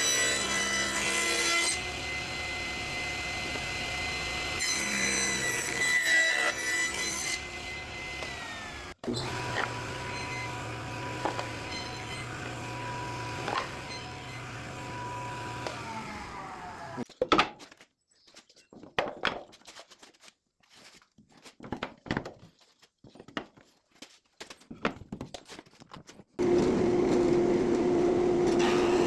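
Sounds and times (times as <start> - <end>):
power tool motor whining: 7.6 - 17.0, 26.4 - 29.0.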